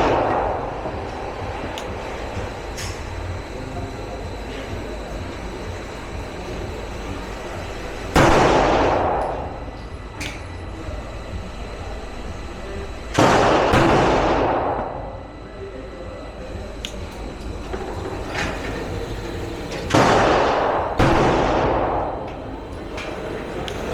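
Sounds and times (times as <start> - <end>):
pistol shots with echo: 13.2 - 15.0, 19.9 - 22.2.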